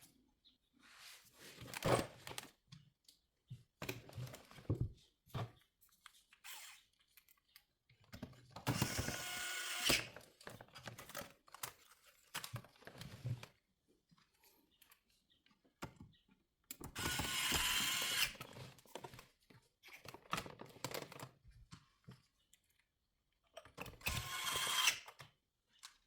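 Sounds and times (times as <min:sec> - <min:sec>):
plastic parts clicking and knocking: 0:15.6 - 0:22.3.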